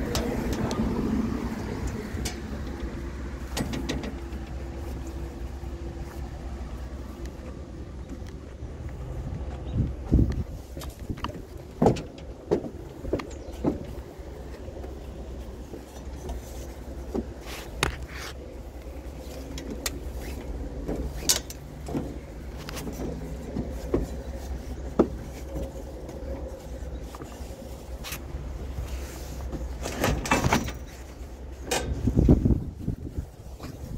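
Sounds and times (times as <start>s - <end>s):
engine low rumble: 0.0s - 33.9s
sharp knocks and clanks: 10.8s - 14.0s.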